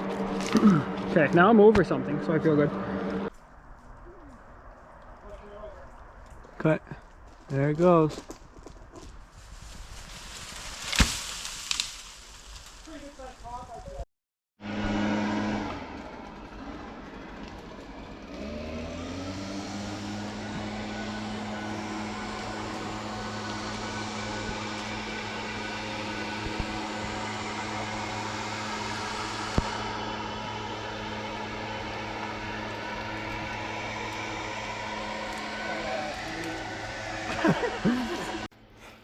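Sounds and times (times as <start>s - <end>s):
motor engine idling: 14.6s - 38.5s.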